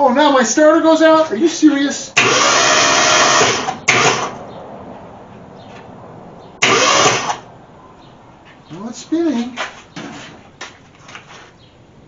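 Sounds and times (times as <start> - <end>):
starter motor cranking engine: 2.2 - 4.4, 6.6 - 7.4.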